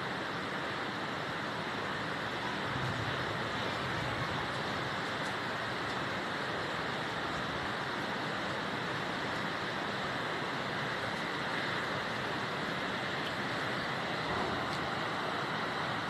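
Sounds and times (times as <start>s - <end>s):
steady rushing noise: 10.9s - 16.0s.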